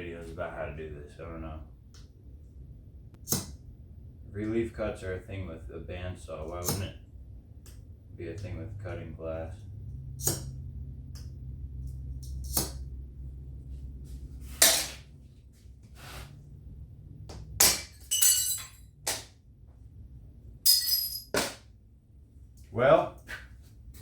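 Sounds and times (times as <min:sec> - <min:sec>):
low steady hum: 0:00.0 - 0:24.0
glass pieces clinking: 0:17.6 - 0:18.9, 0:20.6 - 0:21.5.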